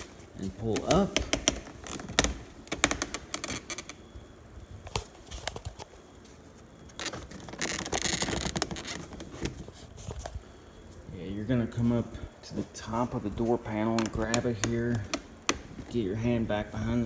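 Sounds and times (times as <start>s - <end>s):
plastic scraping rustle: 6.9s - 10.3s.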